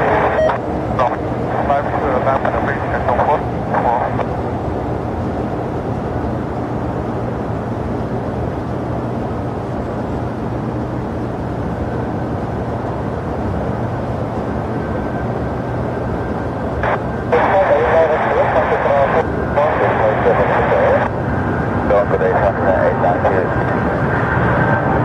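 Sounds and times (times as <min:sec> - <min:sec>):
faint high whine: 0:00.0 - 0:05.9, 0:14.6 - 0:24.8
constant low hum: 0:00.0 - 0:25.0
jet engines rumbling: 0:00.0 - 0:25.0.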